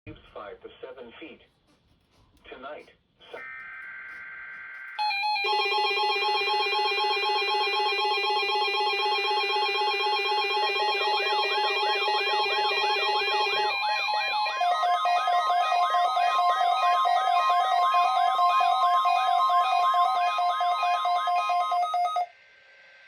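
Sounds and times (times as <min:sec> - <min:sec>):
steady electronic tone chord: 0:05.0 - 0:15.7
warbling electronic tone: 0:05.0 - 0:20.2.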